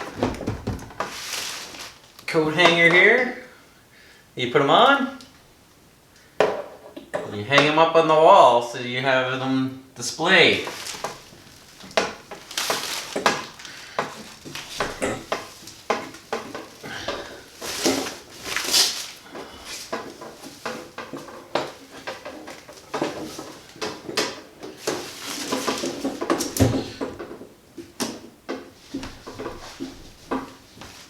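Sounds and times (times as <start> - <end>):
packaging crinkling and rustling: 0.0 - 2.3, 10.4 - 27.2
small knocks and clatters: 0.0 - 3.2, 6.3 - 7.7, 10.5 - 31.0.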